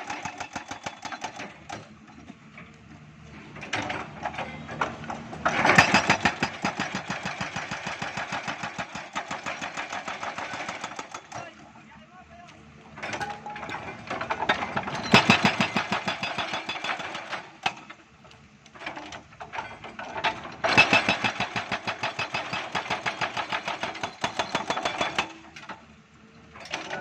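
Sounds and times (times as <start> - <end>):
hydraulic breaker hammering concrete: 0.0 - 1.4, 5.4 - 11.4, 14.4 - 17.9, 20.6 - 25.4.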